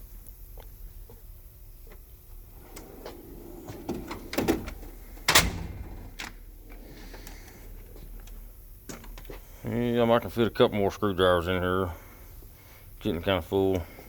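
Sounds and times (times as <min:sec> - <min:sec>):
toolbox drawer sliding on runners: 0:02.6 - 0:07.5
metal drawer banging shut: 0:02.7 - 0:06.4.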